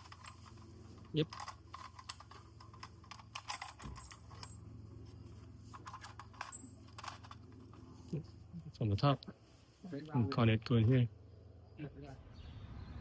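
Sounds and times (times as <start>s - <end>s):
metal fittings clicking and rattling: 0.0s - 4.6s, 5.7s - 7.8s.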